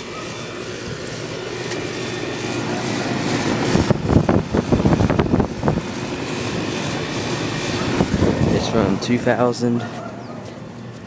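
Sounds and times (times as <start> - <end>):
air conditioner unit humming: 0.0 - 11.0
wind buffeting microphone: 3.2 - 6.8, 7.4 - 9.3.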